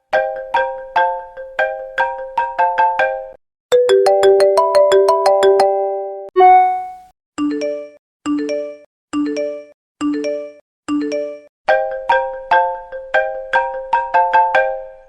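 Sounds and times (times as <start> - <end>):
mallet-like ringtone melody: 3.8 - 7.1
phone alert chimes: 6.4 - 7.1.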